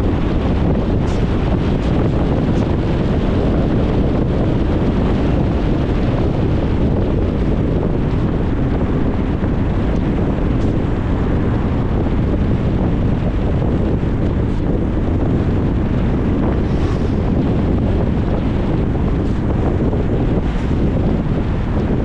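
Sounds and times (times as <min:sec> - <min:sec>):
car road noise: 0:00.0 - 0:22.0.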